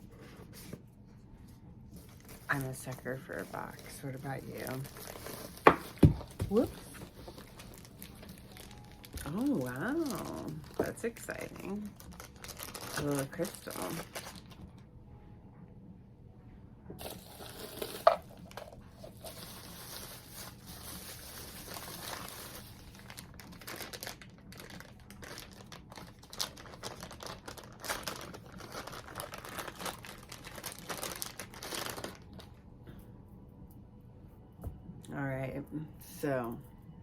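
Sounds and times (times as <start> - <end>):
packaging crinkling and rustling: 1.9 - 14.8, 17.0 - 32.6.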